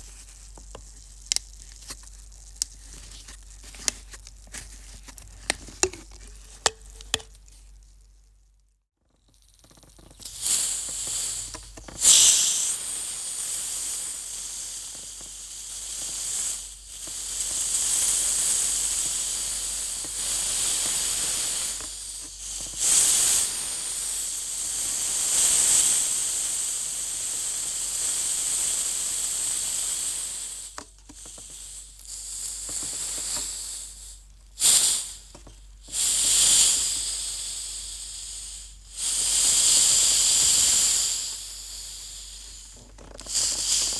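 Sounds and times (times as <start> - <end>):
soda fizzing: 5.8 - 7.4
gas rushing out hiss: 10.2 - 35.3, 35.9 - 43.9.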